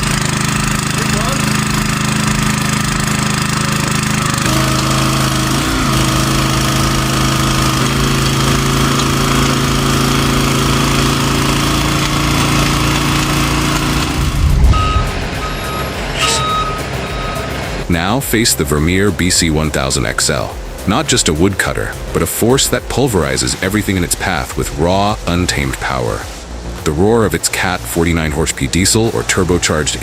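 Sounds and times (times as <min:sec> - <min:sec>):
diesel machinery engine running: 0:00.0 - 0:20.1
reversing alarm beeping: 0:14.1 - 0:17.8.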